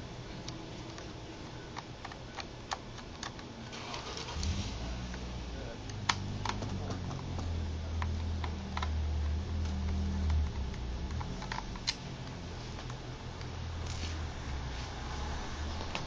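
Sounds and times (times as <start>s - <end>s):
low hum: 4.3s - 16.0s.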